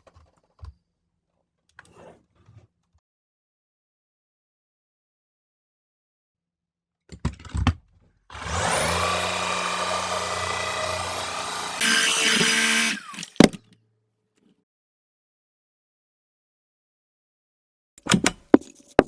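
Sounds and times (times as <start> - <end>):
vacuum motor whine: 8.4 - 13.5.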